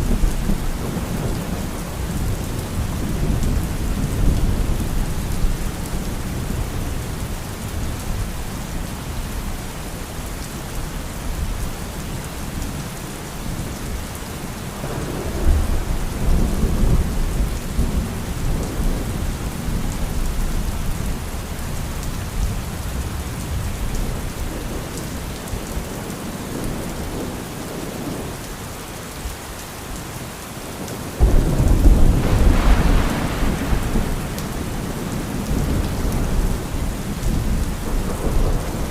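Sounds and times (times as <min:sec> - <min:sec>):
steady rain: 0:00.0 - 0:38.9
rolling thunder: 0:14.8 - 0:20.2, 0:31.2 - 0:38.9
thunderclap: 0:31.2 - 0:38.9.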